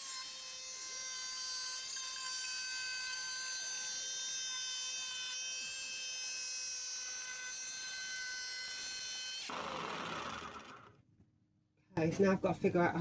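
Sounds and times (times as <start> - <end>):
electric jigsaw cutting plywood: 7.0 - 11.0.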